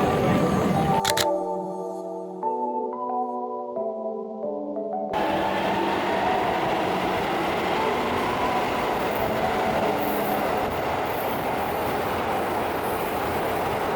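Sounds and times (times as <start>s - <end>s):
train rumbling on rails: 0.0s - 1.3s, 5.2s - 13.9s.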